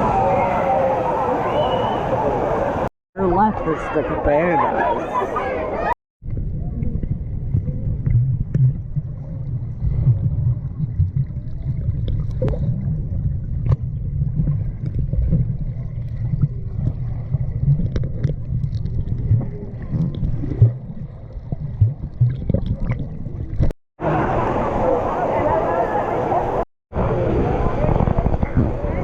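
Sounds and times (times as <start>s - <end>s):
water sloshing and gurgling: 6.2s - 23.8s.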